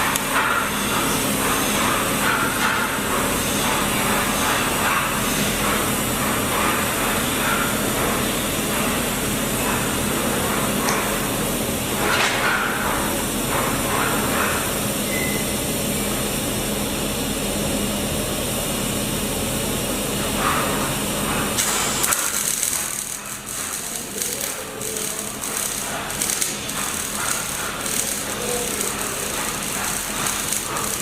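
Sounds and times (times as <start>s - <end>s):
arc welding hiss: 20.6s - 31.0s.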